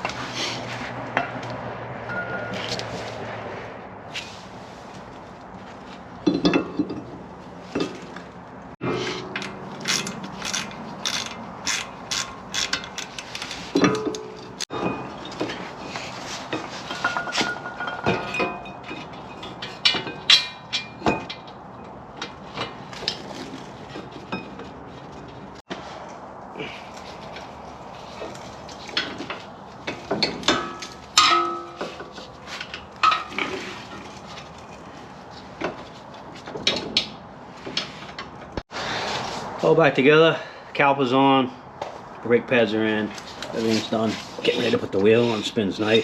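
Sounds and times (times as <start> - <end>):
metal tools clinking: 8.8 - 24.7, 26.6 - 37.2
hand ratchet clicking: 9.8 - 13.6.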